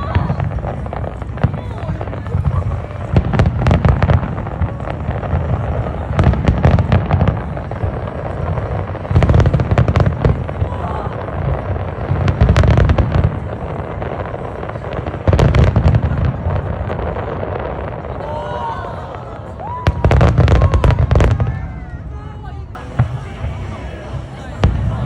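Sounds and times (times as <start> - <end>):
fireworks booming and crackling: 0.0 - 25.0.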